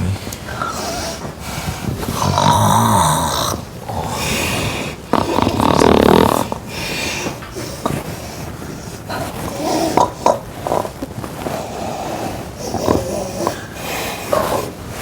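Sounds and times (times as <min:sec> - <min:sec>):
woman snoring: 0:02.2 - 0:07.0, 0:11.6 - 0:14.7.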